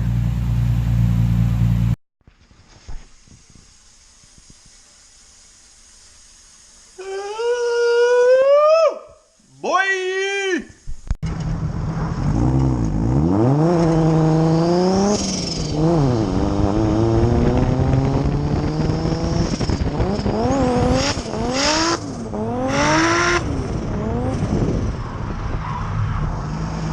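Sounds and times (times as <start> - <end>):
car engine revving: 11.3 - 26.9.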